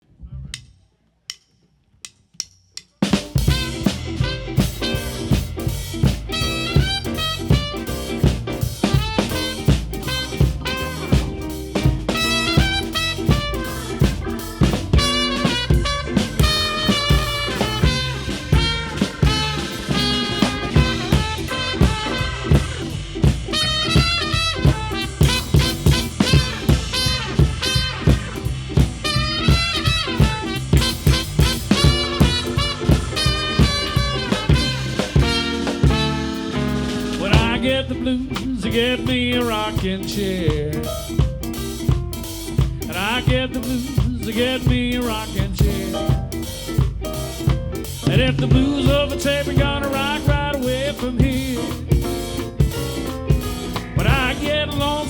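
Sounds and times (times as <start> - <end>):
drum kit beat: 2.1 - 55.0
blues band playing: 3.0 - 55.0
wavering horn lead: 3.4 - 11.4, 12.0 - 37.8.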